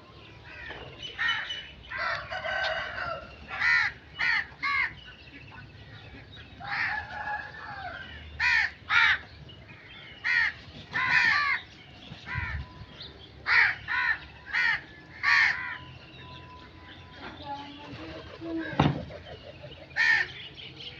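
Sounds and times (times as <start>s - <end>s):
crows cawing: 0.5s - 5.0s, 6.6s - 9.3s, 10.2s - 11.6s, 13.4s - 16.0s, 19.9s - 20.5s.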